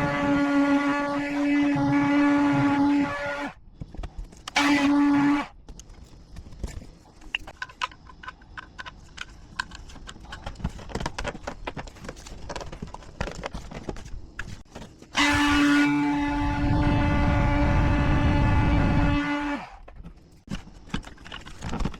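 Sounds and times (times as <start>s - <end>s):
clicks and knocks of hardware: 6.6s - 13.8s.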